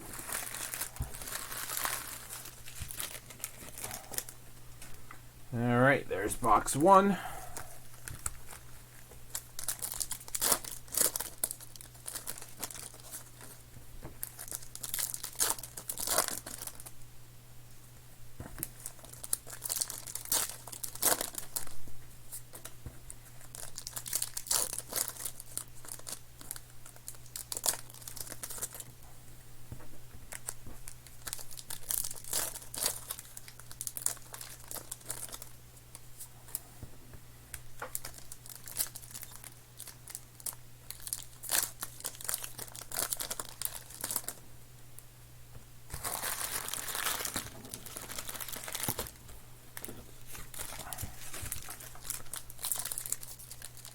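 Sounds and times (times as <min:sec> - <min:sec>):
card wrappers tearing and crinkling: 0:00.0 - 0:04.4, 0:06.4 - 0:13.6, 0:14.2 - 0:16.9, 0:18.6 - 0:21.7, 0:23.3 - 0:28.9, 0:30.3 - 0:35.6, 0:37.7 - 0:44.4, 0:45.9 - 0:53.9
faint steady hum: 0:00.0 - 0:53.9.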